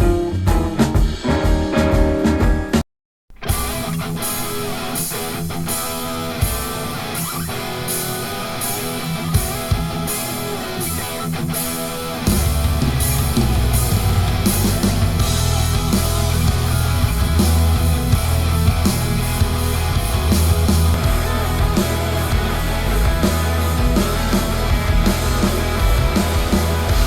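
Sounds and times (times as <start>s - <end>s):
heavy bass and drums: 0.0s - 2.8s, 12.3s - 27.0s
rock music through speaker: 0.0s - 2.8s, 3.4s - 27.0s.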